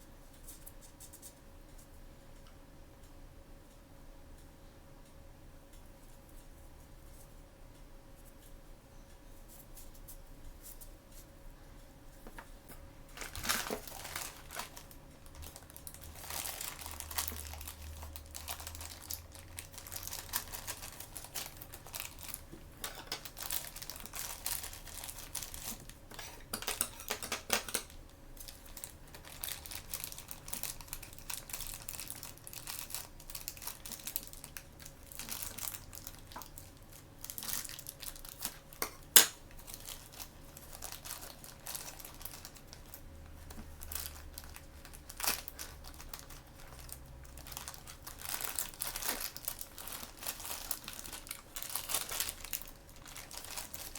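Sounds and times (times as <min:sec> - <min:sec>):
plastic packaging crinkling: 0:13.1 - 0:53.9.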